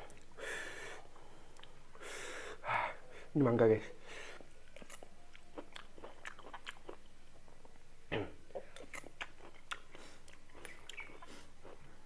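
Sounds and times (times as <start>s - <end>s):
person chewing fruit: 4.4s - 7.8s, 8.4s - 12.0s.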